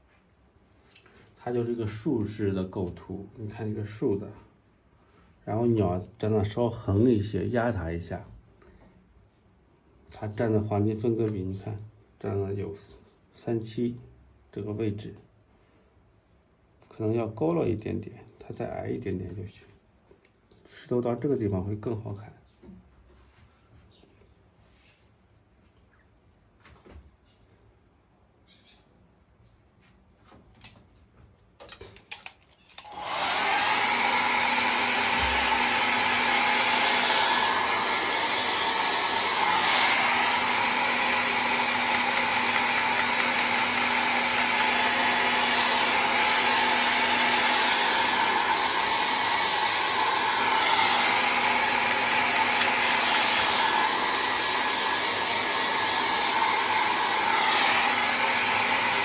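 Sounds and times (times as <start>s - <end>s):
hair dryer blowing: 32.8s - 59.0s.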